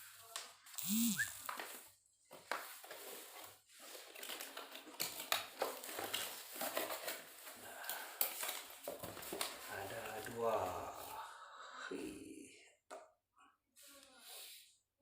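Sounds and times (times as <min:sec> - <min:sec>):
packaging rustling and crinkling: 0:01.4 - 0:10.4.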